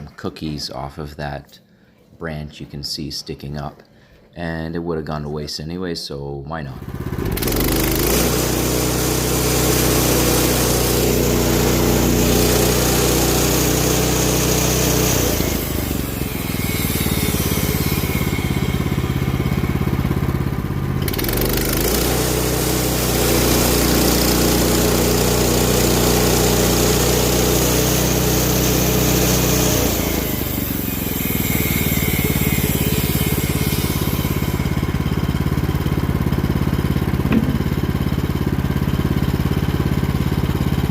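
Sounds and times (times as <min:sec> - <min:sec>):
chainsaw cutting wood: 0:06.8 - 0:40.9.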